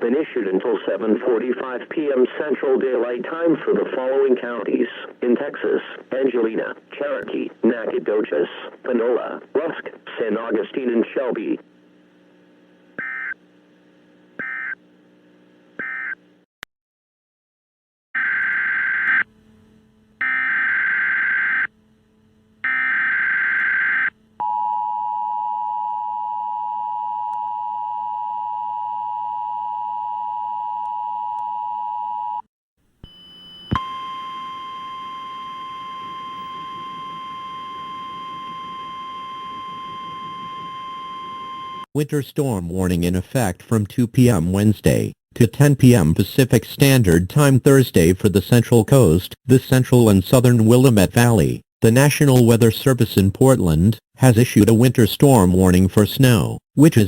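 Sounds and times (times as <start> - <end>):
steady two-note attention tone: 33.0 - 41.8
steady warning tone: 33.0 - 41.9
screeching data tone bursts: 33.6 - 41.9.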